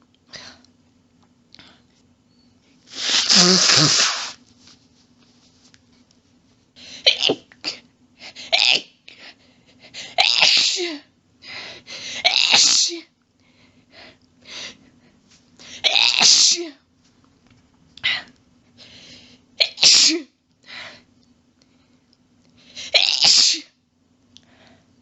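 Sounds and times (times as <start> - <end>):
faint steady hum: 0.0 - 25.0
person sneezing: 2.9 - 4.4, 10.2 - 11.0, 12.3 - 13.0, 19.6 - 20.3, 22.9 - 23.7
quiet breaths: 13.4 - 15.8, 18.0 - 19.5, 24.3 - 25.0.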